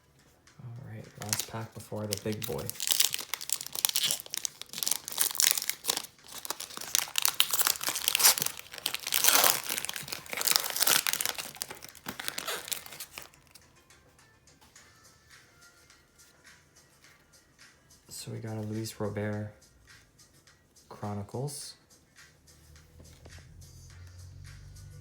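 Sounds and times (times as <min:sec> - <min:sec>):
plastic wrapper tearing and crinkling: 0:01.1 - 0:13.6.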